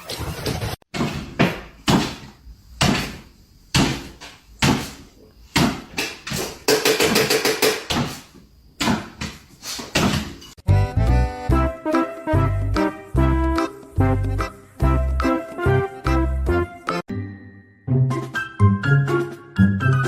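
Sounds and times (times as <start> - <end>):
sharp knocks: 0.9 - 8.2.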